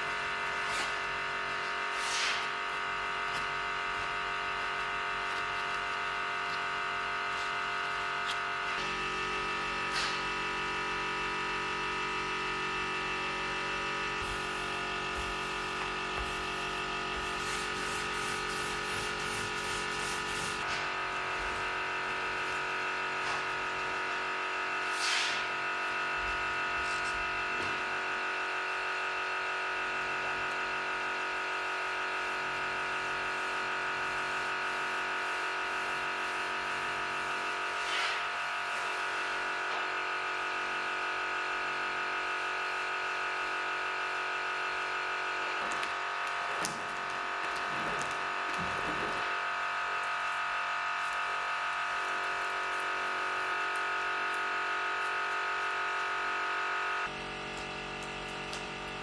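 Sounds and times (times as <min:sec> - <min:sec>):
small electric motor humming: 0:00.3 - 0:27.9.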